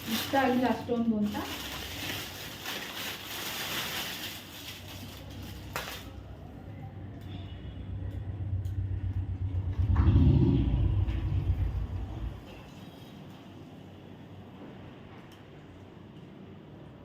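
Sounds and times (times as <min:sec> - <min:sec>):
low rumble: 0:06.2 - 0:12.7.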